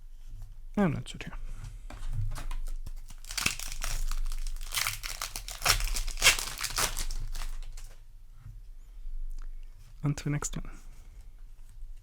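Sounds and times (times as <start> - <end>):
foil wrapper crackling: 2.4 - 8.0.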